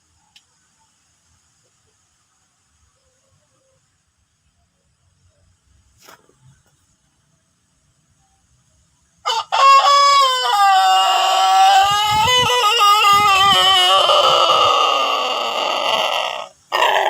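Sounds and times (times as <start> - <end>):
rooster crowing: 9.2 - 17.0.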